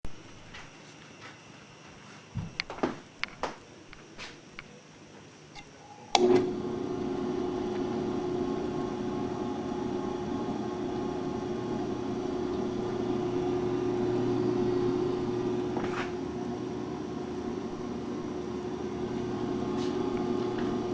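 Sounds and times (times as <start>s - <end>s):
mixer switch click: 5.6s - 6.5s
mixer motor humming: 5.6s - 20.9s.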